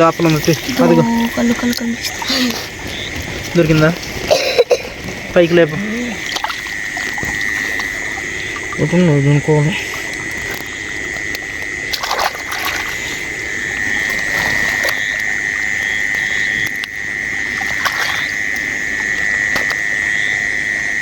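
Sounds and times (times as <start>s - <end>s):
knocks or splashes from water: 0.0s - 13.1s, 16.0s - 18.7s
frogs and insects chorus: 0.0s - 21.0s.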